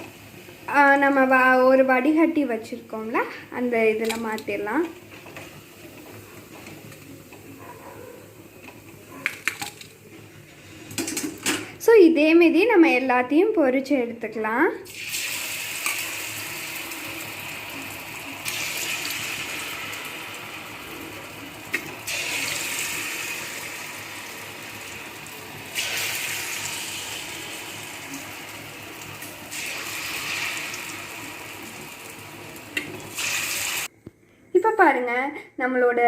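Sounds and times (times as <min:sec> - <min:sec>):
food deep-frying in oil: 0:00.0 - 0:07.6, 0:14.8 - 0:33.9.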